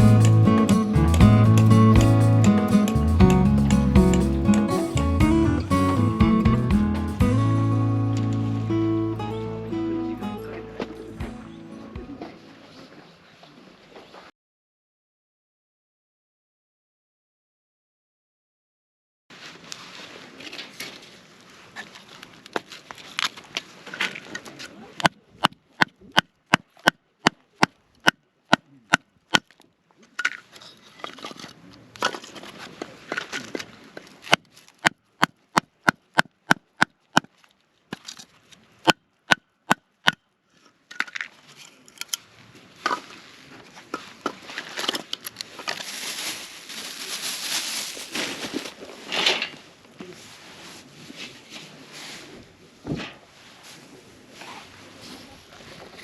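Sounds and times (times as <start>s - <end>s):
rustling and handling noise: 40.5s - 52.3s.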